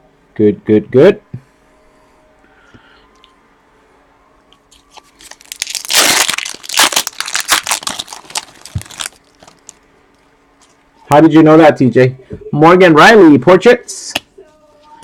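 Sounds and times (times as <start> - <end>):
foil wrapper tearing and crinkling: 5.0 - 9.8.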